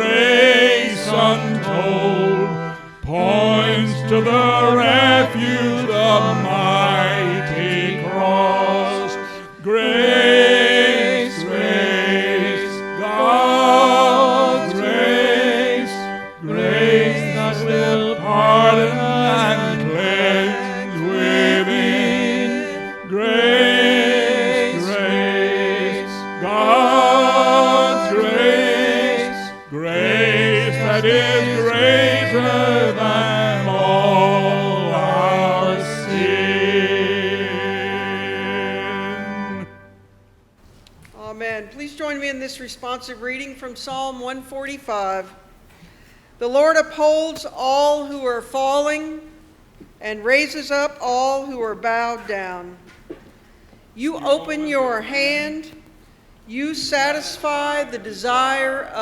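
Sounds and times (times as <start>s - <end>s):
solo voice singing a hymn: 0.0s - 39.7s, 54.0s - 55.8s, 56.5s - 59.0s
church organ: 0.0s - 45.8s.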